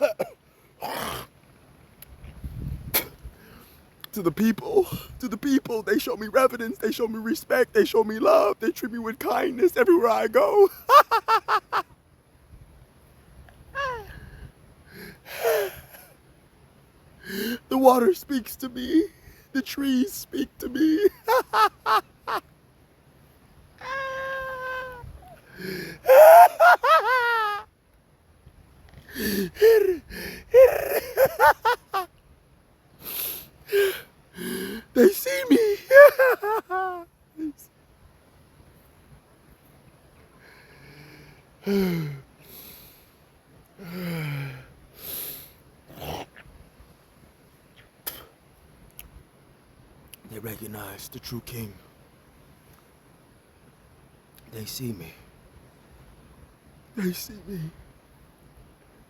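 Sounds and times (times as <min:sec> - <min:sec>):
man wailing: 0:00.0 - 0:00.3, 0:08.2 - 0:11.8, 0:13.8 - 0:14.1, 0:17.3 - 0:22.4, 0:23.8 - 0:27.7, 0:29.2 - 0:32.1, 0:34.8 - 0:37.6
man sobbing: 0:00.0 - 0:01.0, 0:04.2 - 0:11.9, 0:13.8 - 0:14.2, 0:14.9 - 0:16.1, 0:17.2 - 0:22.4, 0:23.8 - 0:27.7, 0:29.1 - 0:32.1, 0:33.7 - 0:37.6, 0:41.6 - 0:42.3, 0:43.8 - 0:44.7
gasping breath: 0:25.5 - 0:26.1, 0:29.1 - 0:30.5
sniff: 0:33.0 - 0:33.6.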